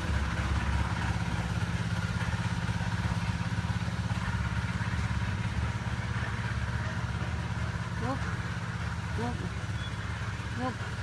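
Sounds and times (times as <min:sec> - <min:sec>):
small engine running: 0:05.6 - 0:11.0.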